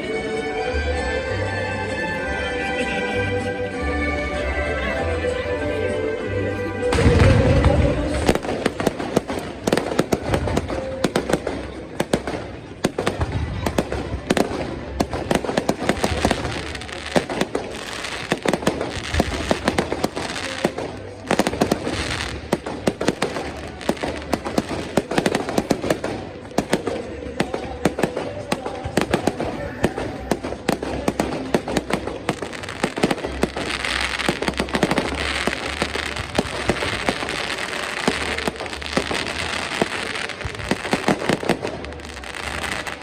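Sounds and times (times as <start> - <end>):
fireworks crackling and popping: 6.9 - 43.0.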